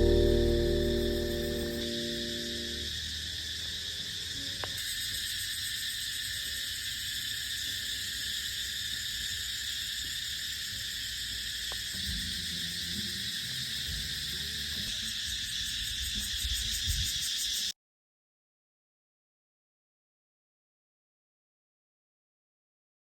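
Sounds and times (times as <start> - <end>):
insect chorus chirring: 0.0 - 17.7.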